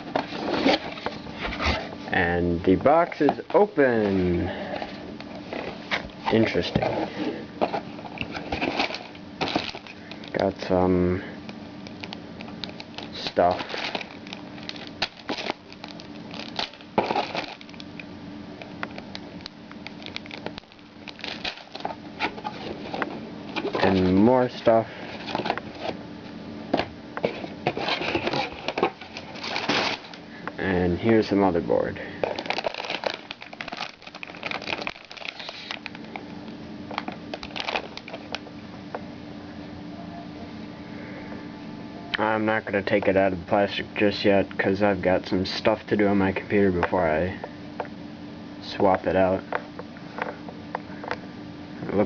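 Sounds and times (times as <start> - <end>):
faint steady hum: 0.0 - 52.0
packaging rustling and clicking: 7.6 - 10.5, 11.8 - 24.2, 25.2 - 26.0, 27.2 - 30.2, 32.2 - 38.4
plastic wrapping crinkling: 7.6 - 10.5, 11.9 - 18.1, 18.8 - 24.2, 27.2 - 30.2, 32.2 - 38.4.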